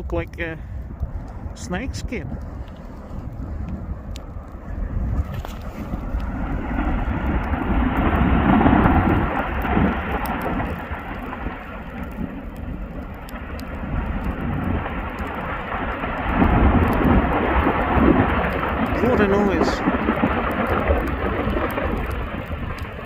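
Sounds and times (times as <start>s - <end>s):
volcano rumbling: 0.0s - 23.0s.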